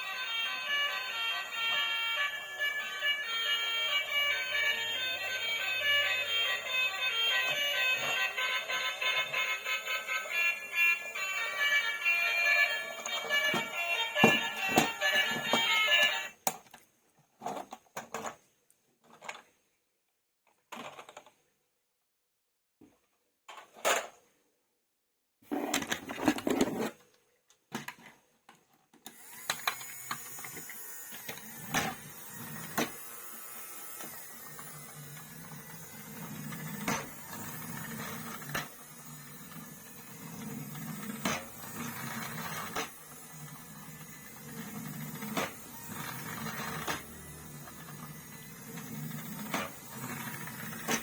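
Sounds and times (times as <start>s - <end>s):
toy motor whirring: 0.0s - 16.4s, 29.0s - 51.0s.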